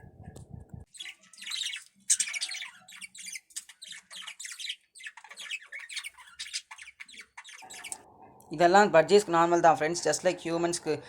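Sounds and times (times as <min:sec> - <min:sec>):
budgerigar squawks and chirps: 0:00.9 - 0:08.0.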